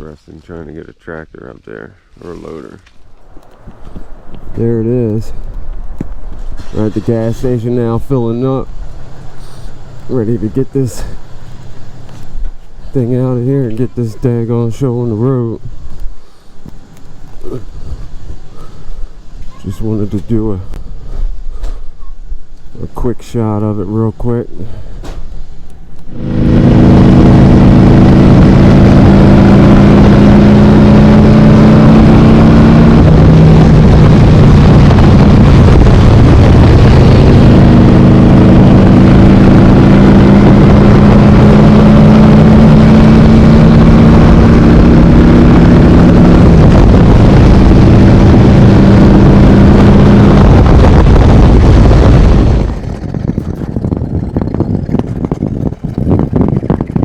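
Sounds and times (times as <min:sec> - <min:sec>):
motorcycle engine running: 0:26.0 - 0:57.0.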